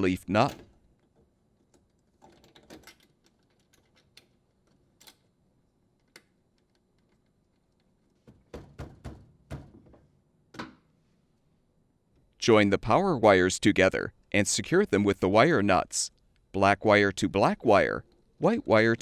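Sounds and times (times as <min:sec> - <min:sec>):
small parts clicking and tapping: 0:00.5 - 0:05.3.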